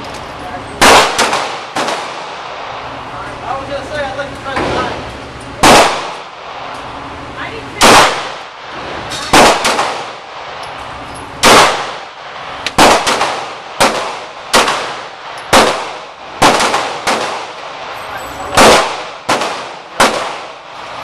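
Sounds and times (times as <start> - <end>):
pistol shots: 0.8 - 2.9, 5.6 - 6.7, 7.8 - 10.6, 11.4 - 21.0.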